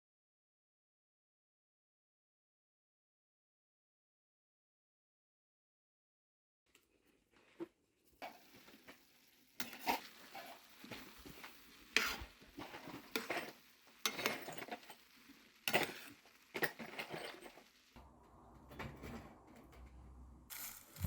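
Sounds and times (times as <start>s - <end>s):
food sizzling in a pan: 7.3s - 18.0s, 20.5s - 21.0s
utensil scraping a pan: 9.6s - 17.8s.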